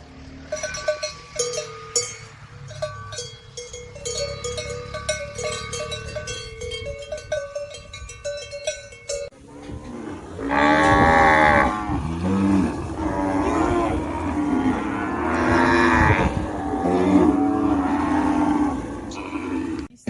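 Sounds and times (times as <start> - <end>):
cowbells clanking: 0.4 - 9.8
cow mooing: 9.4 - 19.9.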